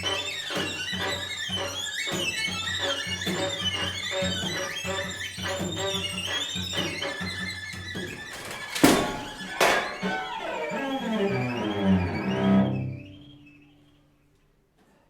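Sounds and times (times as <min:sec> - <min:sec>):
sharp percussive accents: 0:00.0 - 0:10.5
string quartet playing: 0:00.0 - 0:13.9
high violin with vibrato: 0:00.0 - 0:14.0.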